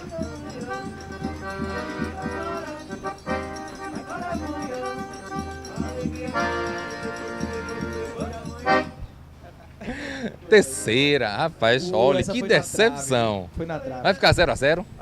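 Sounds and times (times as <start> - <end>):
instrumental music with steady beat: 0.0 - 9.2.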